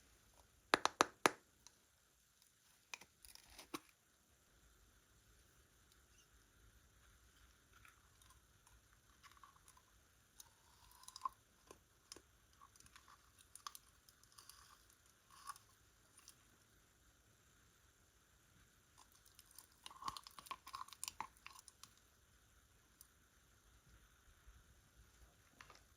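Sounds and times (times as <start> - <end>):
sharp slime pops: 0.8 - 1.4
slime kneaded by hand: 0.8 - 1.4.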